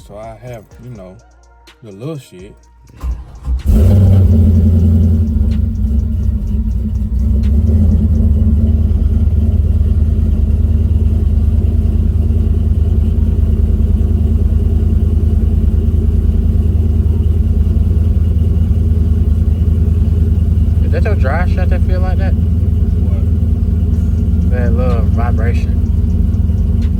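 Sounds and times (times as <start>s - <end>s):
car engine idling: 0.0s - 1.6s, 2.8s - 26.9s.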